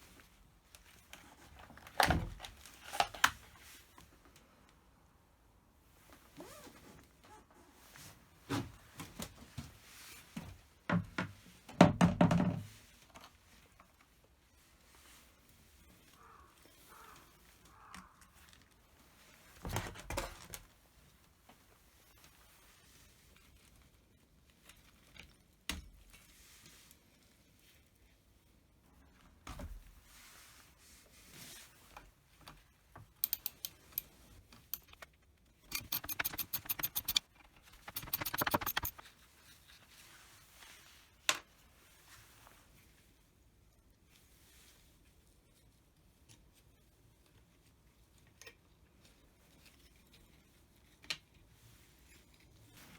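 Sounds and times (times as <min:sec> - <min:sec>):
quick metallic clicks: 0:33.2 - 0:34.1, 0:34.7 - 0:35.0, 0:35.7 - 0:39.0.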